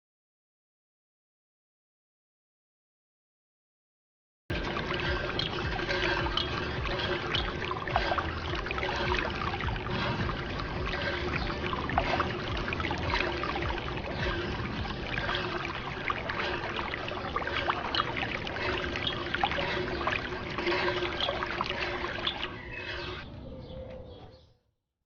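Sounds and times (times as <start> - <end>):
pump hum: 4.5 - 23.2
small water drips: 4.5 - 23.2
water trickling and splashing: 4.5 - 23.3.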